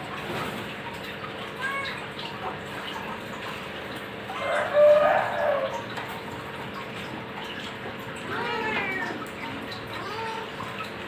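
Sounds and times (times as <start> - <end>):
rooster crowing: 4.4 - 5.7.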